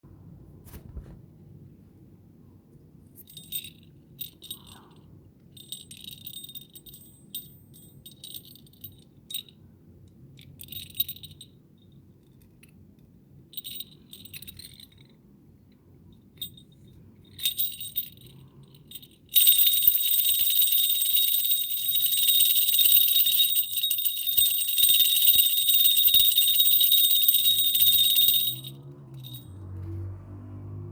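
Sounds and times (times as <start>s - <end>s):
metal bells jingling: 3.3s - 4.9s, 16.4s - 29.8s.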